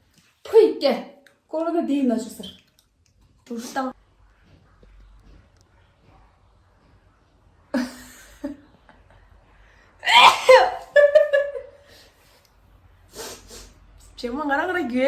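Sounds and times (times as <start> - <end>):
woman sneezing: 10.0 - 10.9.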